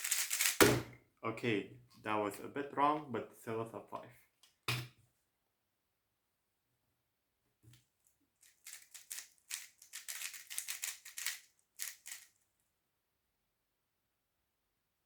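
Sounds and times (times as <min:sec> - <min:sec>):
puzzle cube plastic clicks: 0:00.0 - 0:00.6, 0:08.4 - 0:12.3.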